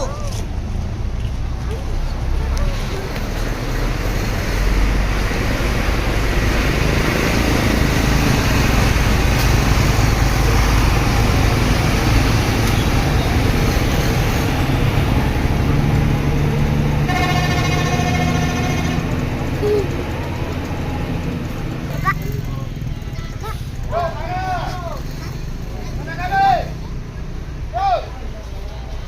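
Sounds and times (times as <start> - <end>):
bus engine rumble: 0.0 - 29.0
road noise: 0.0 - 29.0
bus multi-tone horn: 17.0 - 19.4.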